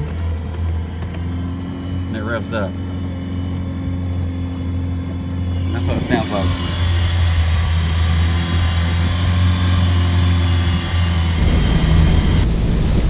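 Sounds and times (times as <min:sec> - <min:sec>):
outboard motor running at high revs: 0:00.0 - 0:12.9
deep rumble: 0:11.0 - 0:13.0.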